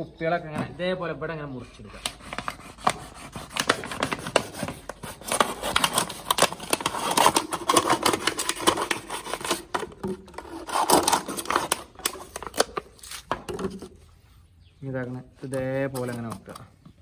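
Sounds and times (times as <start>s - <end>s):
blade cutting plastic bottle: 2.0s - 14.0s.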